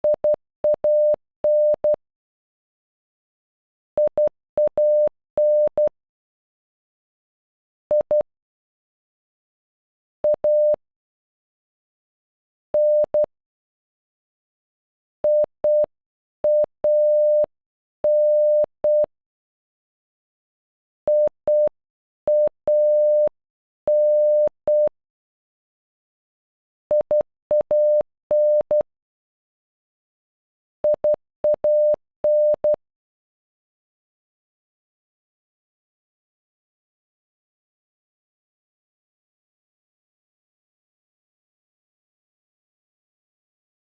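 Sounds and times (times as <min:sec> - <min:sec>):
morse code beeps: 0:00.0 - 0:02.0, 0:04.8 - 0:05.9, 0:10.3 - 0:10.8, 0:16.5 - 0:17.5, 0:18.1 - 0:19.1, 0:21.1 - 0:21.7, 0:22.3 - 0:23.3, 0:23.9 - 0:24.9, 0:26.9 - 0:28.9, 0:30.8 - 0:32.8.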